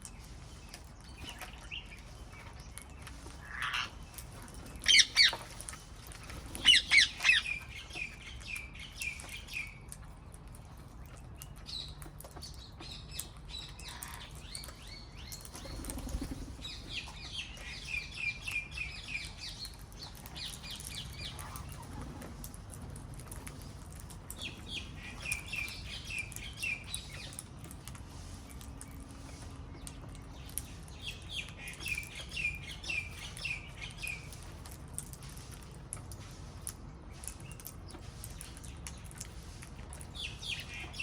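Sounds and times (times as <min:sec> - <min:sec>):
parrots chirping: 0:04.8 - 0:09.8.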